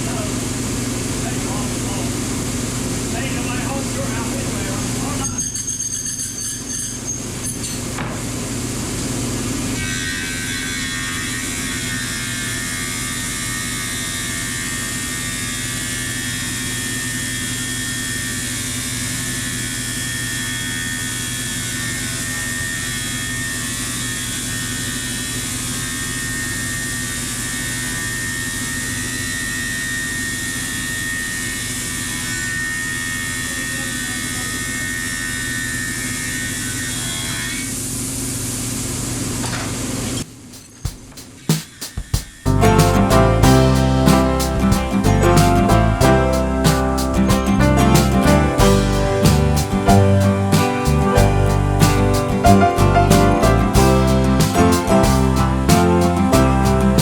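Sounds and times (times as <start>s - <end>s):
high whine of board feeding: 8.1s - 38.0s, 40.3s - 57.0s
thickness planer running: 8.3s - 37.9s.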